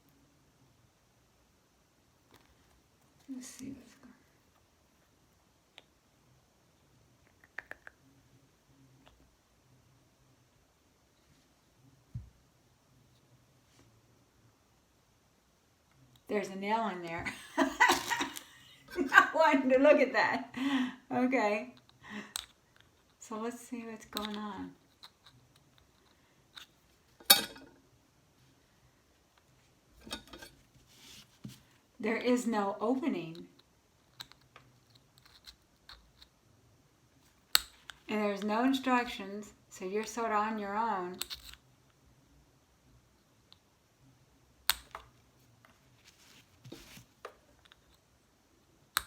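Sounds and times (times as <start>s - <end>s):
soft scraping: 29.5s - 31.8s, 45.7s - 47.2s.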